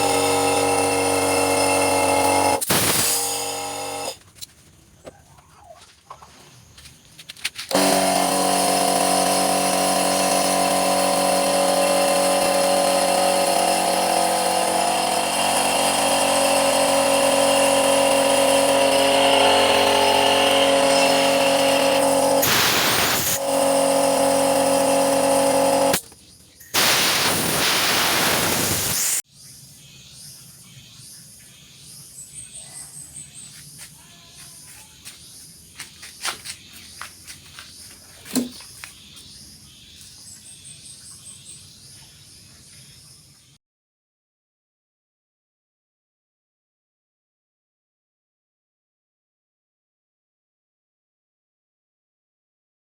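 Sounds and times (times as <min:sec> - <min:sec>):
air compressor humming: 0:00.0 - 0:04.2, 0:07.7 - 0:29.2
rush of released air: 0:22.4 - 0:23.4, 0:26.7 - 0:29.2.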